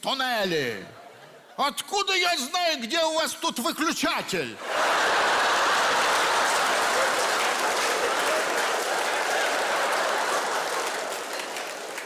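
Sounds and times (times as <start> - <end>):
audience applauding: 4.6 - 12.0.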